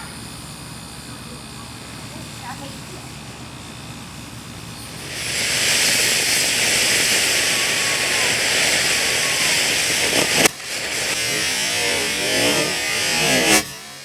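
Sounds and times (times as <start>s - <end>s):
firework fountain hissing: 0.0s - 14.0s
sharp crack: 4.9s - 14.0s.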